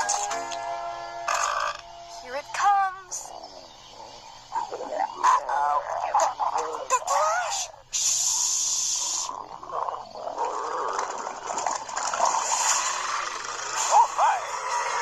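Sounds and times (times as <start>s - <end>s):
hiss: 7.9s - 9.3s.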